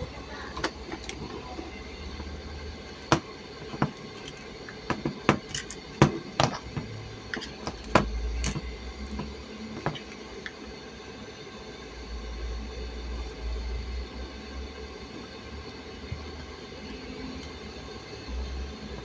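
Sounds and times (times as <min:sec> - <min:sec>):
sharp clicks and knocks: 0:00.5 - 0:01.8, 0:03.0 - 0:10.6.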